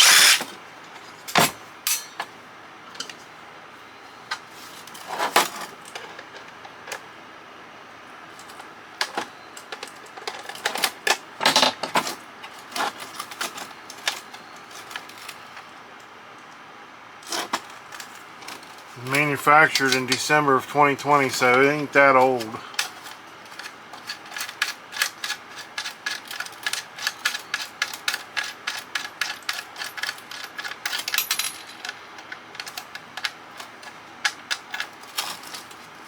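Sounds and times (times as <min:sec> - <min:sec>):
metal screws clicking and clattering: 0:23.6 - 0:33.3.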